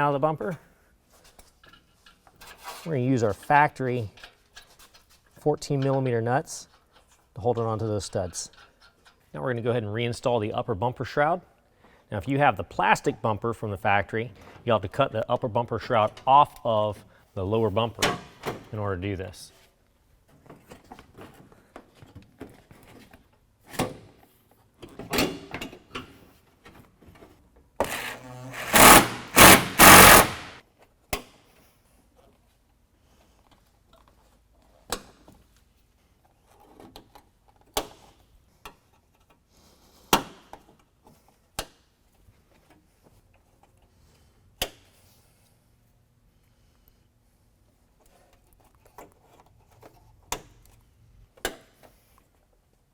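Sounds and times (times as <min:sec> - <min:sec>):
loud rapid mechanical rattle: 0:27.8 - 0:30.6.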